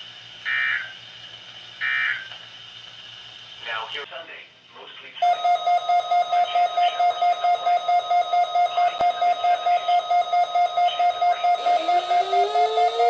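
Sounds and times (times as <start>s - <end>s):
electronic alarm beeping rapidly: 5.2s - 13.0s
tone rising in pitch: 5.2s - 13.0s.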